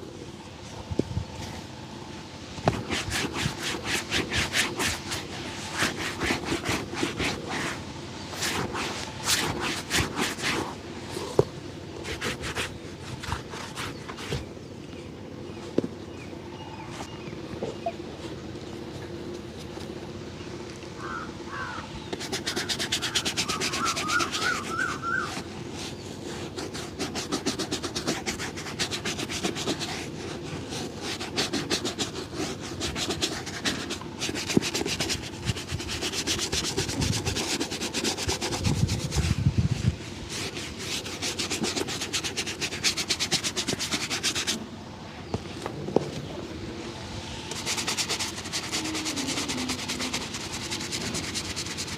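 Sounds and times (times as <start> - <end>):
shoe being rubbed with cloth: 2.6 - 14.5, 22.1 - 44.6, 47.5 - 51.9.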